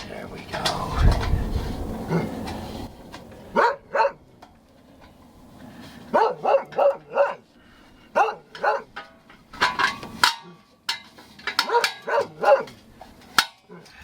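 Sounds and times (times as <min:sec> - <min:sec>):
dog barking: 0:03.5 - 0:04.2, 0:06.1 - 0:07.4, 0:08.1 - 0:08.9, 0:11.6 - 0:12.8.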